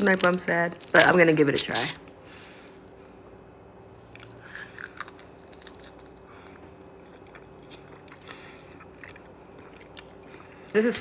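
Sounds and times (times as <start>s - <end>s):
crisp crunches of biting: 4.2s - 10.6s.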